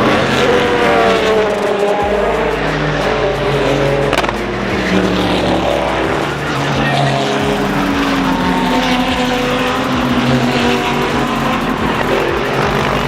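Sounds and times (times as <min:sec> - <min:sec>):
sharp crack: 0:00.0 - 0:05.0
race car engines passing: 0:00.0 - 0:13.0.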